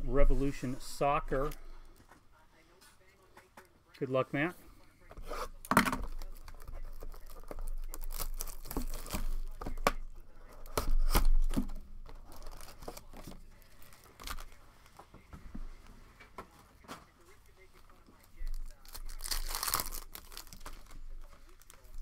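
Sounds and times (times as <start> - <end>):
plastic wrapping ripping: 5.2 - 14.6, 17.4 - 22.0
plastic wrapping crinkling: 5.5 - 15.1, 17.2 - 22.0.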